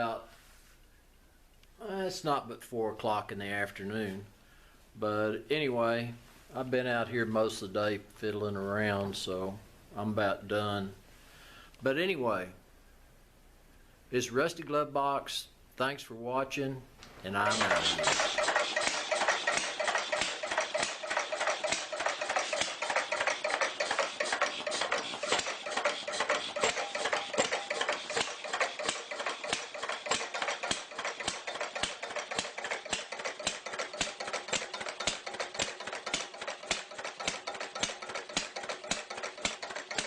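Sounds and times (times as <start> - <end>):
rapid regular clicking: 17.4 - 40.0
small engine running: 17.4 - 40.0.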